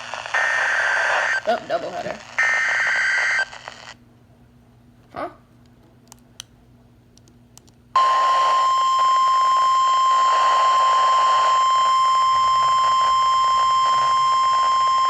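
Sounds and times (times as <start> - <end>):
steady warning tone: 0.0 - 1.5, 2.3 - 3.9, 8.0 - 15.0
radio hiss: 0.0 - 3.9.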